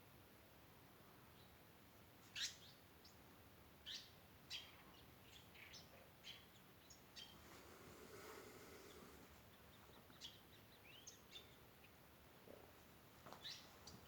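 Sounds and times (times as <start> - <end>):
small birds chirping: 2.2 - 14.0
soft rush of noise: 7.0 - 14.0.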